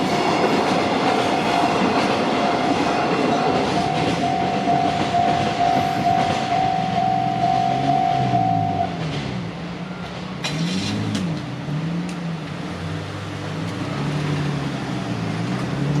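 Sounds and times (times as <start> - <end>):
level crossing alarm tone: 3.6 - 8.9
vehicle engines pulling away: 7.2 - 16.0.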